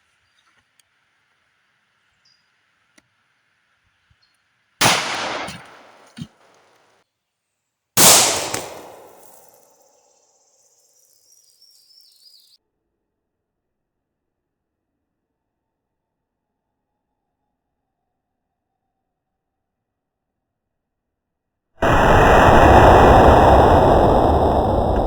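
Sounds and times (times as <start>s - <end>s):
pistol shots with echo: 4.8s - 6.0s, 8.0s - 9.5s.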